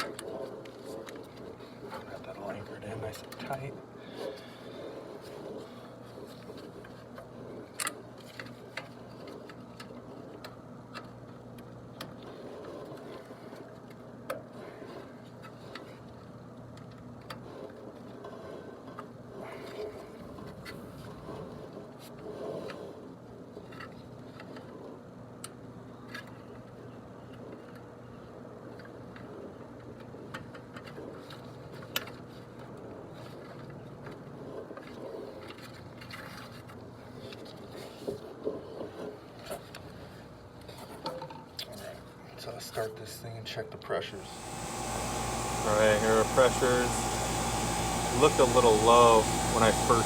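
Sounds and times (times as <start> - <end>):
steady low hum: 44.2 - 50.0.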